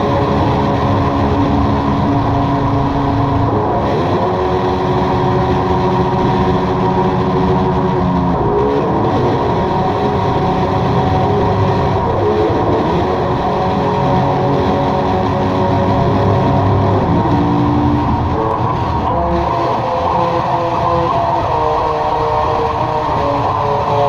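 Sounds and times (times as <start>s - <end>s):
distorted drone music: 0.0s - 24.0s.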